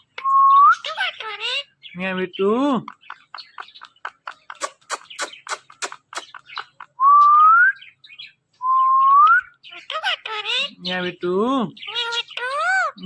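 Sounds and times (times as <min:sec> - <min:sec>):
parakeet clicks and chirps: 0:02.7 - 0:07.5.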